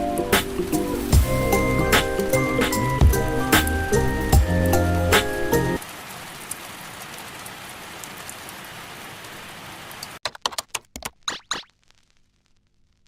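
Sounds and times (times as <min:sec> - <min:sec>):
steady rain falling: 0:00.0 - 0:10.2.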